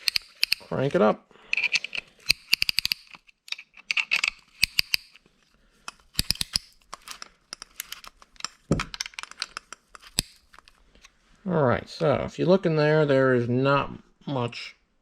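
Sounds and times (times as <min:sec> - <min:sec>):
metallic clicks and clinks: 0:00.0 - 0:00.8, 0:01.5 - 0:05.2, 0:05.9 - 0:10.8.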